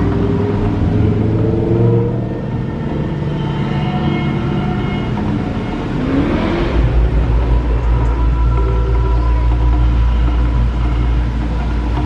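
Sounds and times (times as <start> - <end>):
sustained droning tones: 0.0 - 12.0
deep low rumble: 5.2 - 12.0.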